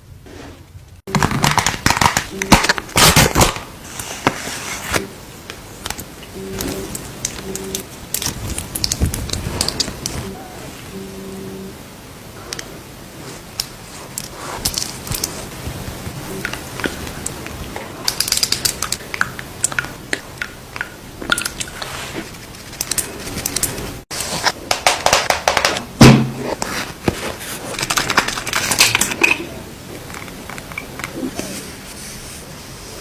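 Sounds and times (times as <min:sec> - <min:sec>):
makeup cases tapping and clicking: 0:24.7 - 0:25.8
loud thump: 0:26.0 - 0:26.4.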